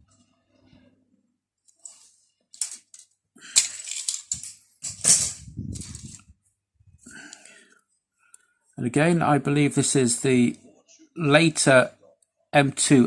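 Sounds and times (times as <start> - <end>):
plastic frames rustling and clacking: 1.6 - 6.4.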